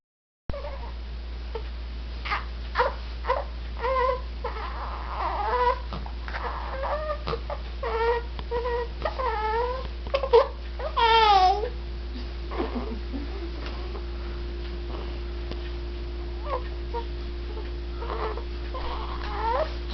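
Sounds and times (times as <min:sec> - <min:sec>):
pet animal whining cries: 0:00.5 - 0:01.0, 0:02.2 - 0:11.8, 0:16.4 - 0:19.9
steady low hum: 0:00.5 - 0:19.9.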